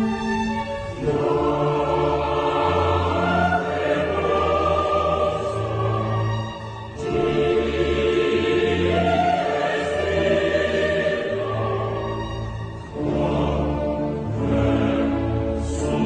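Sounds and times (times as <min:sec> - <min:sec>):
choral singing: 0:00.0 - 0:16.0.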